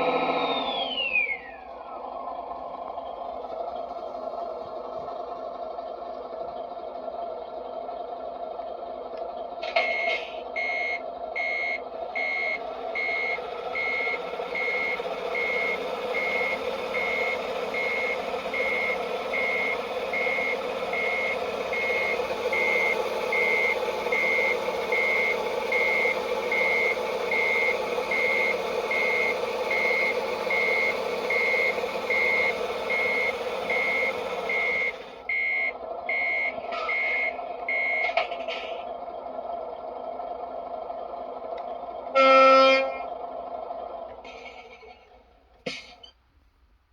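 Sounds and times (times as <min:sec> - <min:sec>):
simulated truck engine: 0:00.0 - 0:46.9
reversing beeper beeps: 0:09.8 - 0:38.2.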